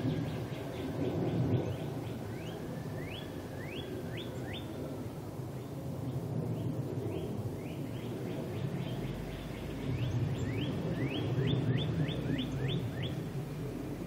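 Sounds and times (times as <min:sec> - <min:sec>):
small birds chirping: 0:00.0 - 0:04.9, 0:05.5 - 0:14.0
steady low rumble: 0:00.0 - 0:14.0.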